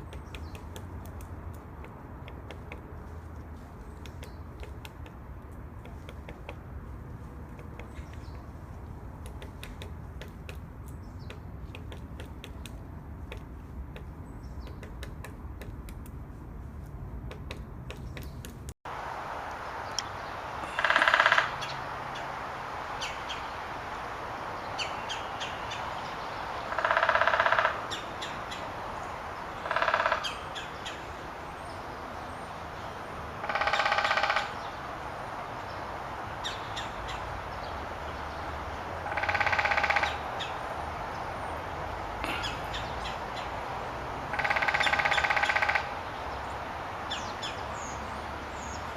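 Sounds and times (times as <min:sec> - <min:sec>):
woodpecker rattling calls: 0:00.0 - 0:16.3, 0:17.1 - 0:18.6, 0:20.6 - 0:22.3, 0:24.8 - 0:31.8, 0:32.8 - 0:34.8, 0:36.3 - 0:40.7, 0:41.6 - 0:43.6, 0:44.3 - 0:48.9
woodpecker tapping: 0:00.0 - 0:18.7, 0:20.0 - 0:21.7, 0:26.6 - 0:28.7, 0:29.6 - 0:31.1, 0:33.3 - 0:34.8, 0:36.3 - 0:41.2, 0:42.1 - 0:43.6, 0:44.3 - 0:47.6.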